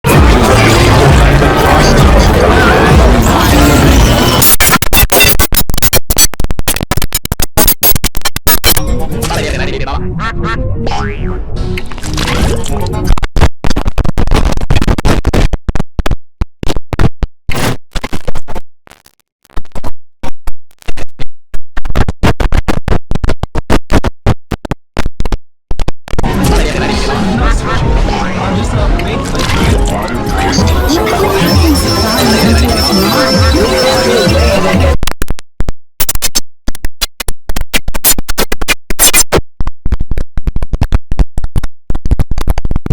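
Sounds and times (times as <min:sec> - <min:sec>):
stuttering computer shutdown sound: 0:29.0 - 0:35.0.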